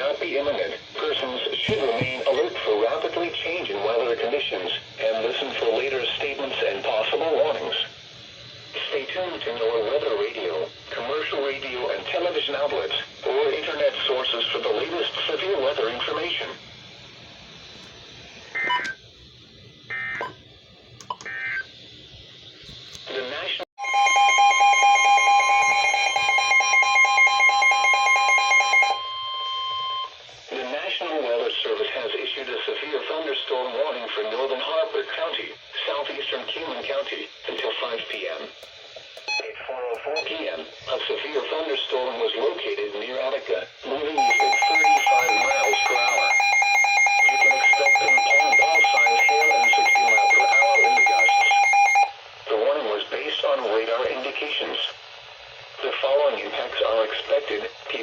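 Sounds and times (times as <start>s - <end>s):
computer voice: 1.6s - 2.6s, 44.1s - 46.4s, 47.0s - 51.5s
rapid pulsing alarm beeping: 23.8s - 30.2s, 44.2s - 52.2s
steady warning alarm tone: 23.8s - 30.2s, 44.2s - 52.2s.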